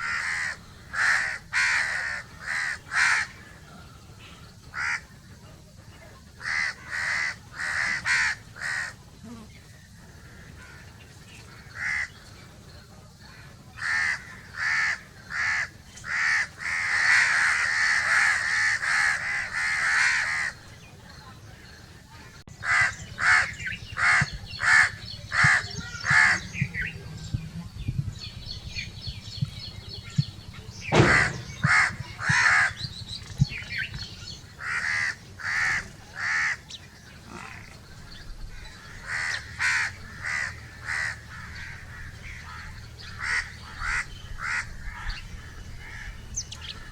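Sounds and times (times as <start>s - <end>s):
crows cawing: 0.0s - 3.5s, 4.7s - 5.1s, 6.4s - 9.0s, 11.6s - 12.2s, 13.3s - 20.6s, 22.6s - 26.4s, 31.0s - 32.8s, 34.6s - 36.6s, 38.6s - 46.9s.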